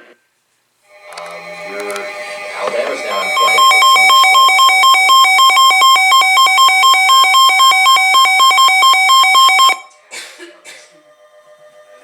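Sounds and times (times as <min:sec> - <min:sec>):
two-tone electronic alarm warble: 0:00.9 - 0:10.0.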